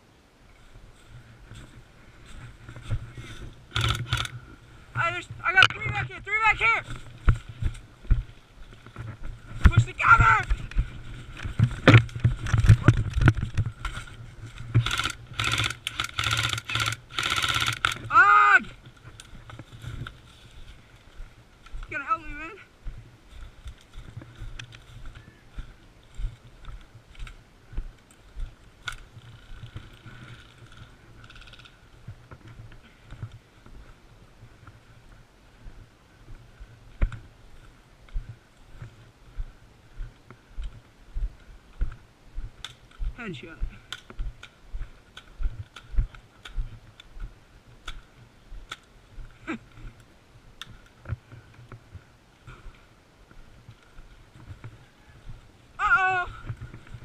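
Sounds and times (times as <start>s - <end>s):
rapid rattle of clicks: 3.7s - 4.4s, 14.7s - 18.1s.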